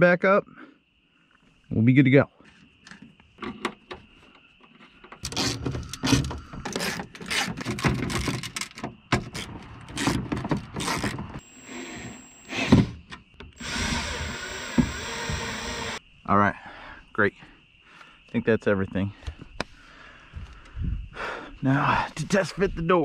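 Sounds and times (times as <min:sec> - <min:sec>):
tools clattering and rubbing: 0:04.6 - 0:11.4.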